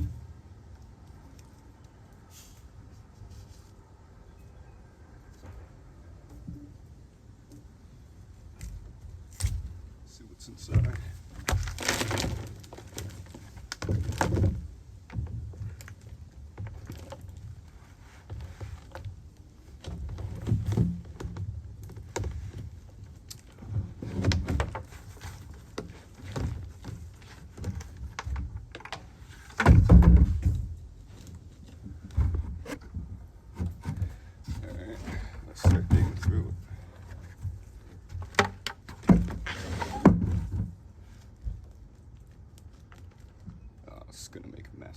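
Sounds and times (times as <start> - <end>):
soil shifting: 6.3 - 44.6
grow bucket being handled: 10.4 - 43.6.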